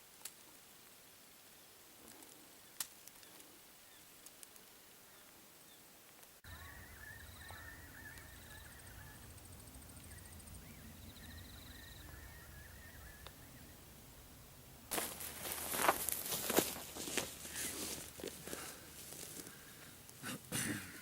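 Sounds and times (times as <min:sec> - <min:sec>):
faint warbling birdsong: 0:05.0 - 0:14.5
low outdoor rumble: 0:06.8 - 0:20.3.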